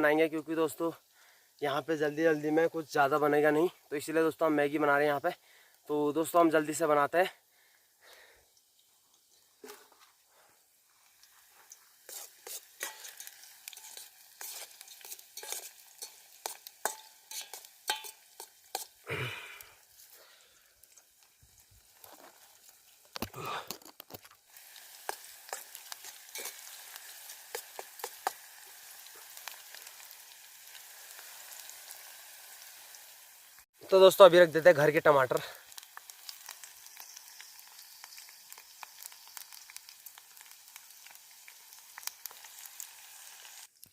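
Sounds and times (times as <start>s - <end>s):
onions sizzling in a pan: 0.0s - 43.9s
spoon scraping and tapping pan: 11.6s - 19.0s, 25.0s - 28.5s.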